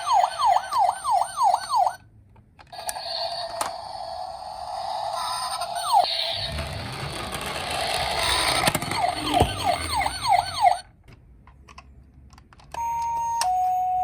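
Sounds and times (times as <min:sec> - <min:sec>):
toy car electronic sirens: 0:00.0 - 0:02.0, 0:02.8 - 0:10.9
low rumble: 0:06.1 - 0:10.8
two-tone hi-lo siren: 0:08.1 - 0:10.8.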